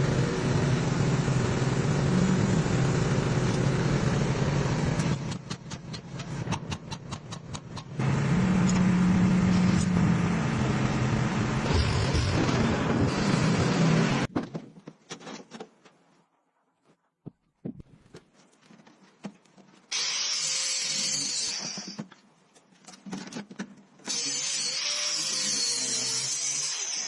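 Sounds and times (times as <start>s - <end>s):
power tool bursts: 19.9s - 22.0s.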